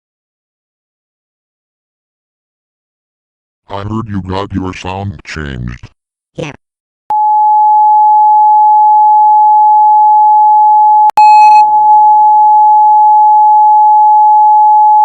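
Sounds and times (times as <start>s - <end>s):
loud electronic beep tone: 11.1s - 12.3s.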